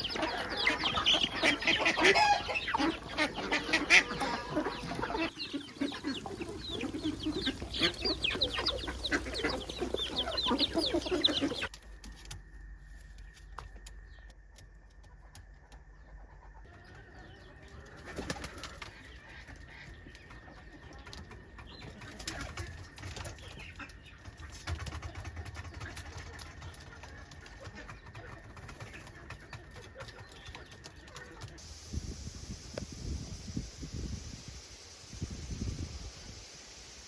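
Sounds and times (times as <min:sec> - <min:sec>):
farmyard birds calling: 0:00.0 - 0:11.7, 0:15.0 - 0:31.6
wind buffeting microphone: 0:31.6 - 0:36.4
steady high hiss: 0:31.6 - 0:37.0.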